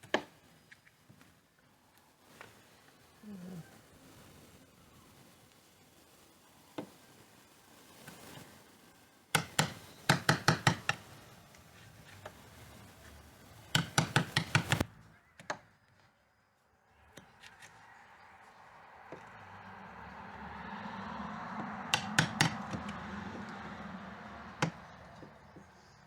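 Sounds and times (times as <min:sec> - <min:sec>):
chisel struck into wood: 0:09.4 - 0:11.0, 0:13.8 - 0:14.8, 0:21.9 - 0:23.0, 0:24.6 - 0:24.9.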